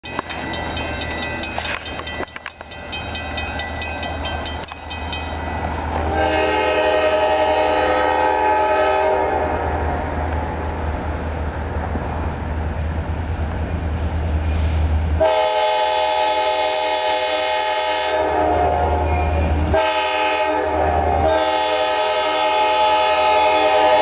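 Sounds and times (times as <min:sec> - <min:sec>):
locomotive air horn blast: 0:06.0 - 0:09.9, 0:15.2 - 0:24.0.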